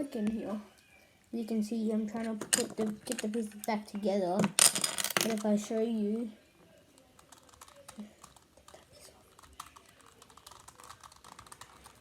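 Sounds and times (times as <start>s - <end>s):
plastic cube pieces clicking: 7.1s - 12.0s.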